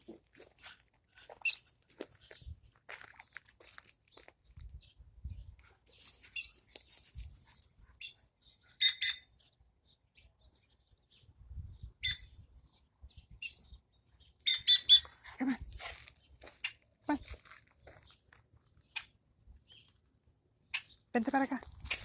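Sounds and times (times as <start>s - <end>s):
bird chirping: 8.0s - 15.1s.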